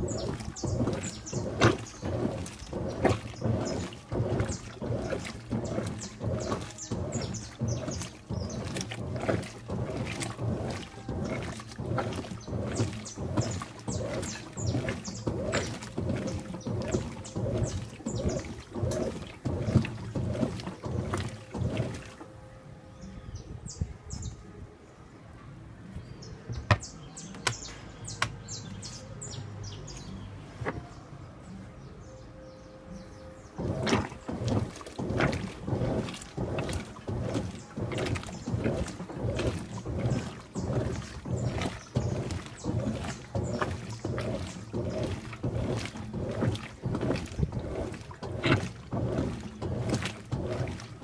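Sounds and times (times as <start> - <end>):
clicks and splashes: 0.0 - 22.4, 33.4 - 51.0
water and clothes sloshing: 0.0 - 25.0, 25.9 - 51.0
washing machine low hum: 0.0 - 51.0.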